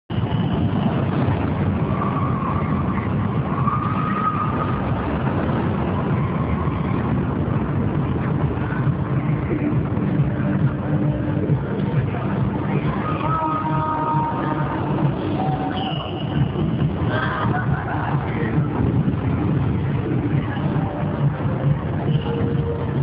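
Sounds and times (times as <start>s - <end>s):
amusement ride machinery rumbling: 0.1s - 23.0s.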